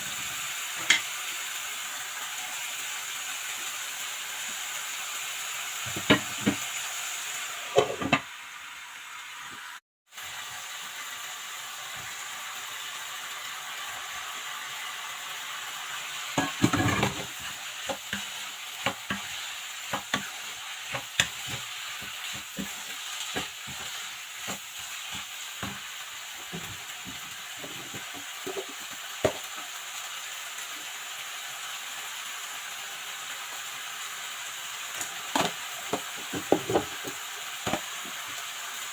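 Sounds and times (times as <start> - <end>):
food sizzling in a pan: 0.0 - 38.9
spoon scraping a pan: 0.8 - 1.1, 7.7 - 8.2, 16.3 - 29.4.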